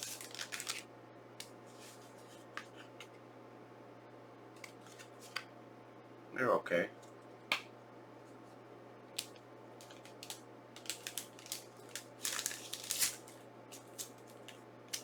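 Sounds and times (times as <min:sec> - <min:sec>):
plastic packaging crinkling: 0:00.0 - 0:00.8, 0:09.2 - 0:15.0.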